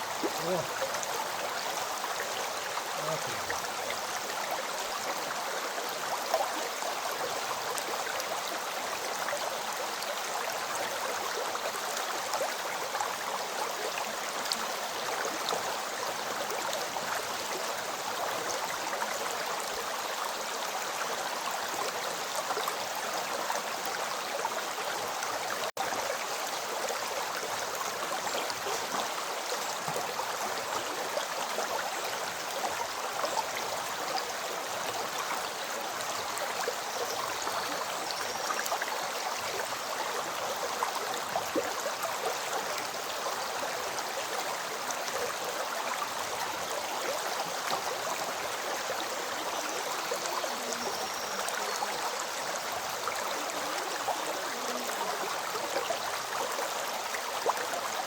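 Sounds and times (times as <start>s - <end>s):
river water flowing over stones: 0.0s - 58.0s.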